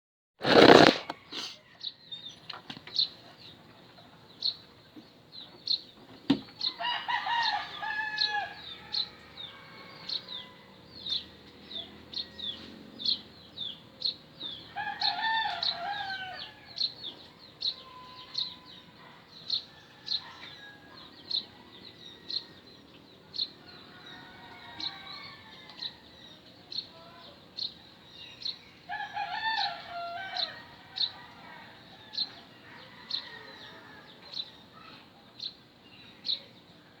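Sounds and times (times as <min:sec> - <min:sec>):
roosters crowing: 0:00.4 - 0:02.0, 0:06.6 - 0:13.2, 0:14.5 - 0:22.9, 0:23.6 - 0:26.4, 0:28.4 - 0:34.7.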